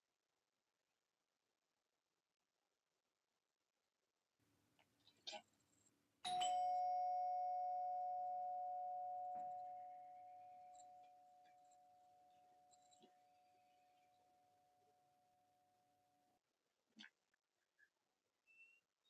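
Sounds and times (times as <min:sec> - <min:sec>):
two-tone doorbell chime: 0:06.3 - 0:12.9.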